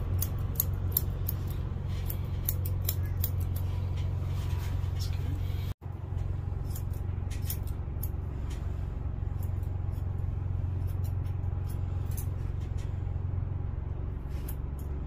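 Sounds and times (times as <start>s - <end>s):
scissors snipping: 0.0s - 3.8s, 6.6s - 8.2s
low electric hum: 0.0s - 15.0s.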